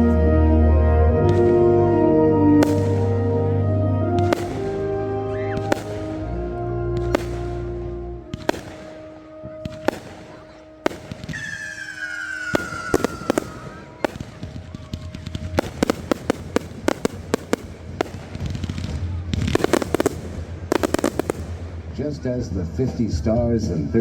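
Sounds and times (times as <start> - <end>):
music: 0.0 - 22.4
firework bangs: 1.2 - 1.8, 2.6 - 22.5
rapid firework crackling: 2.6 - 3.4, 4.2 - 6.4, 7.0 - 22.0
firework whistle falling in pitch: 4.0 - 6.4, 7.0 - 16.6.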